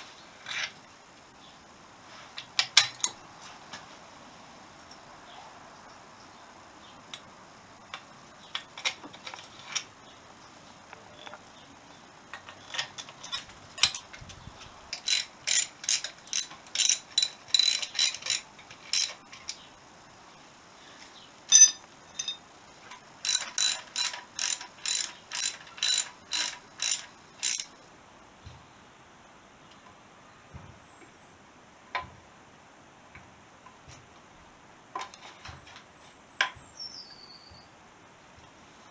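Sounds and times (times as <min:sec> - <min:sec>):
ratchet clicking: 0:14.9 - 0:19.3, 0:22.9 - 0:27.8.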